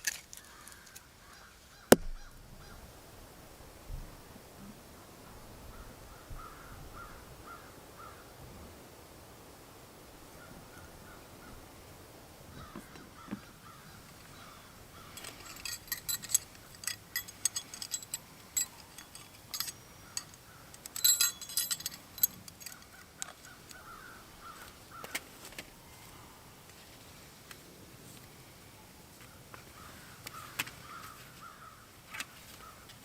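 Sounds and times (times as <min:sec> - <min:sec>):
small metal objects clinking: 0:15.1 - 0:23.8
crows cawing: 0:29.8 - 0:31.8.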